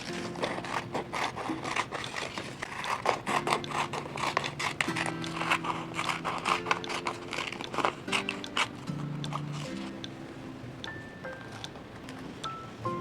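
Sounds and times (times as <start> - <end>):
paper crinkling and scraping: 0.0 - 10.0
soft background music: 0.0 - 13.0.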